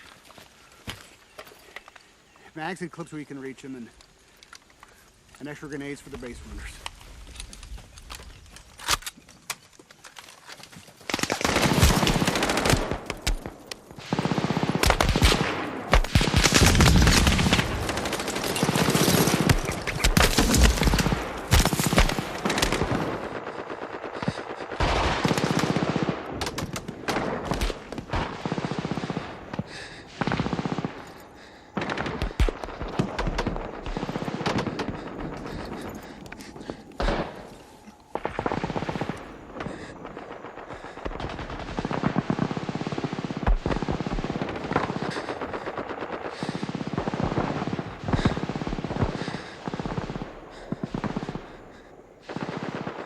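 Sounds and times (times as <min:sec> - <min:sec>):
machine-gun and rifle fire: 0:11.1 - 0:37.5, 0:38.1 - 0:53.0.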